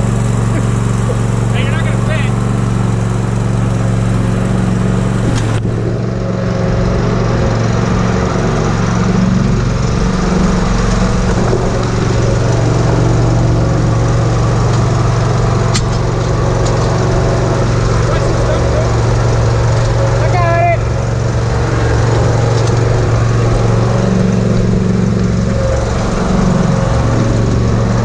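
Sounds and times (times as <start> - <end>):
lawn mower engine running: 0.0 - 28.0.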